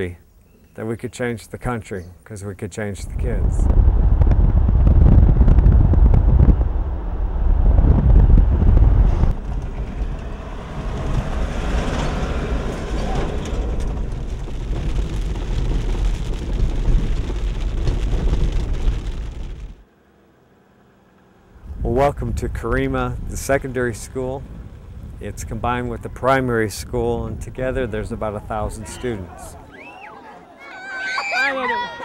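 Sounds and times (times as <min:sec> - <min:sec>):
steady low rumble: 0:02.9 - 0:19.8, 0:21.5 - 0:29.7
wind buffeting microphone: 0:03.0 - 0:19.8, 0:21.6 - 0:29.7.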